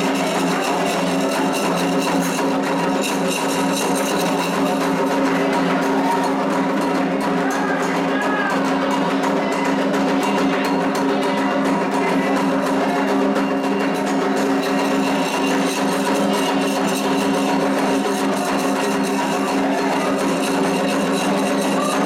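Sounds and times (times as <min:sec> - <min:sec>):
hand drums playing fast rhythm: 0:00.0 - 0:22.0
sharp clicking strokes: 0:13.7 - 0:22.0.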